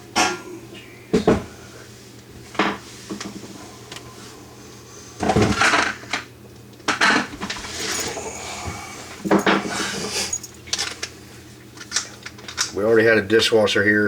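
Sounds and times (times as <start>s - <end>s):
scraping rattle: 7.4s - 10.5s.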